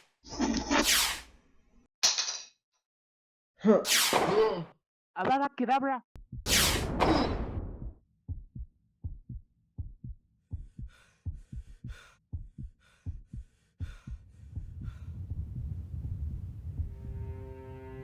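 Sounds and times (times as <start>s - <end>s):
heartbeat thuds: 6.2s - 17.1s
whoosh: 6.5s - 7.8s
low rumble: 14.2s - 18.0s.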